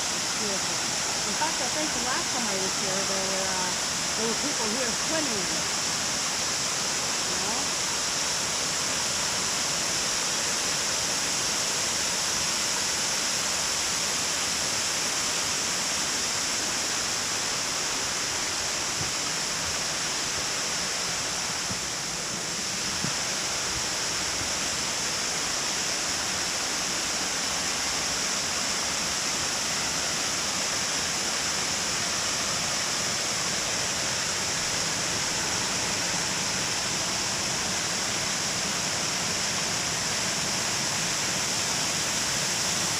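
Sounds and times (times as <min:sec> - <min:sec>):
water rushing over dam: 0:00.0 - 0:42.9.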